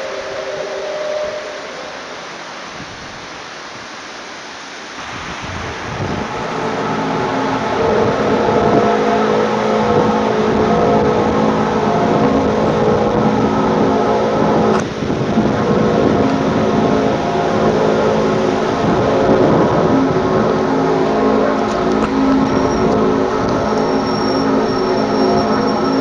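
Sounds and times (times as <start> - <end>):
loud droning groan: 0.0 - 2.4, 5.6 - 26.0.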